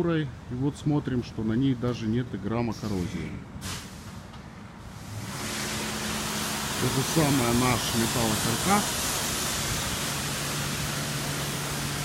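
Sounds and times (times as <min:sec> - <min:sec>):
high-pressure water spray hissing: 0:03.6 - 0:04.2, 0:04.9 - 0:12.0.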